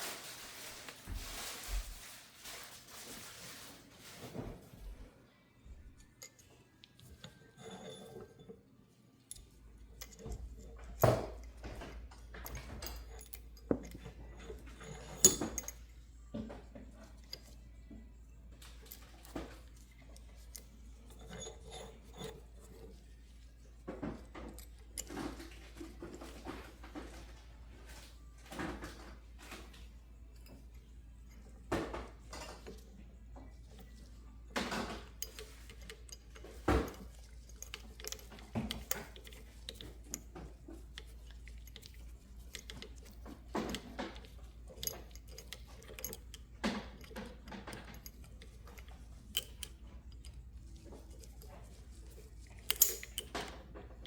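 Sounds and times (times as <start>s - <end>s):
metal tools clinking and knocking: 6.0s - 8.6s, 9.3s - 27.4s, 28.0s - 54.0s.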